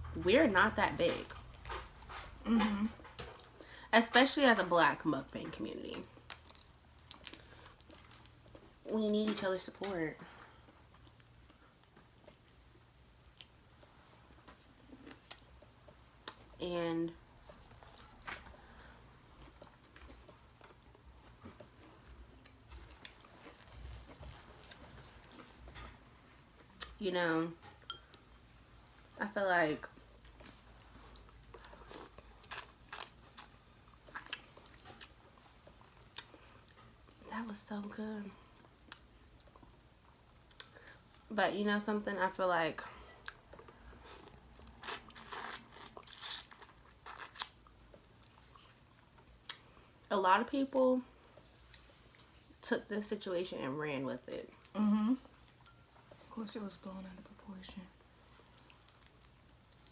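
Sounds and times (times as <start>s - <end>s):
faint chewing: 5.4s - 9.3s, 17.3s - 27.0s, 29.9s - 37.3s, 43.2s - 50.1s, 57.9s - 59.9s
person chewing crunchy food: 31.1s - 36.8s, 43.2s - 49.7s, 58.3s - 59.9s.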